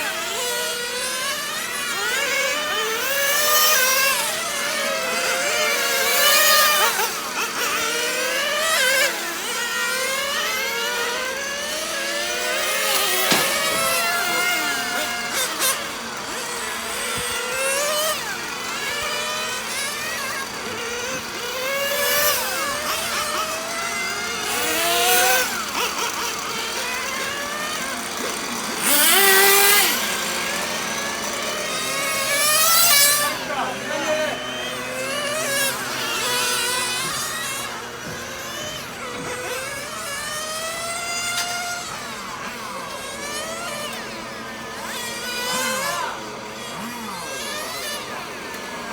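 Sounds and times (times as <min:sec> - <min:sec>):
small nitro engines revving: 0:00.0 - 0:48.9.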